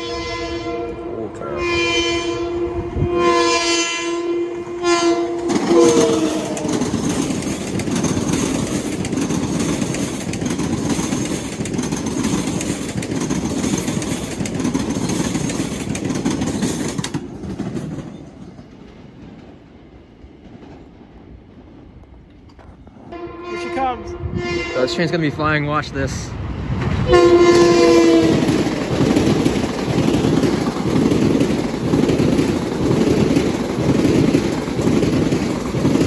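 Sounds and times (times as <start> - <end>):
train horn blasts: 0.0 - 7.0, 23.1 - 25.5, 27.0 - 28.6
train rushing by: 0.0 - 36.0.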